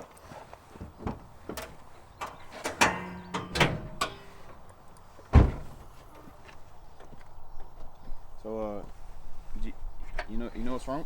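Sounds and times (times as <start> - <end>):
clicks and knocks: 1.5 - 4.3
heavy thump: 5.3 - 5.9.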